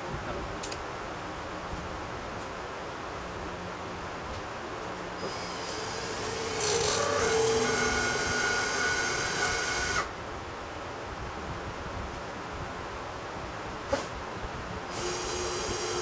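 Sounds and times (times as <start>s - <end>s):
power tool motor whining: 5.2s - 10.1s, 14.9s - 16.0s.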